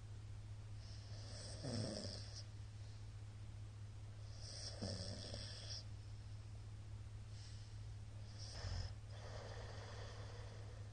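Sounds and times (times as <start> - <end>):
steady low hum: 0.0 - 10.9
man snoring: 1.1 - 2.4, 4.4 - 5.8.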